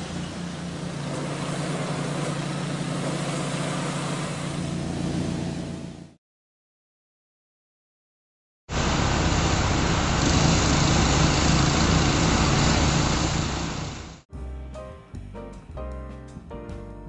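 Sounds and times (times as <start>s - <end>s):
engine hum: 0.0s - 6.2s, 8.7s - 14.2s.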